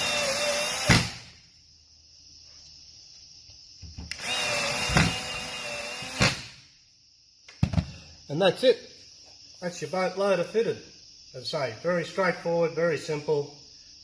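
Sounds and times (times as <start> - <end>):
power drill driving screws: 0.0 - 1.2, 4.1 - 6.5
thump: 7.6 - 8.0.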